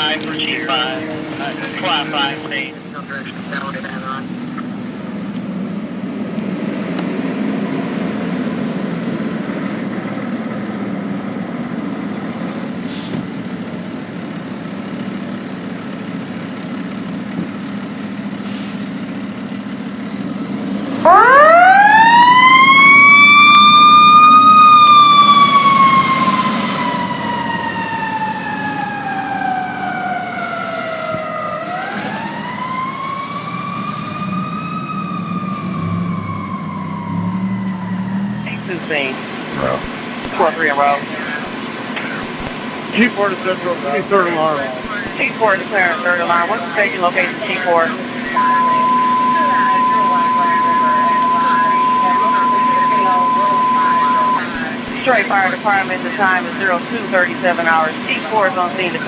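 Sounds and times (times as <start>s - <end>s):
fire truck engine running: 0.0s - 59.0s
siren winding up and down: 21.0s - 43.6s, 44.7s - 59.0s.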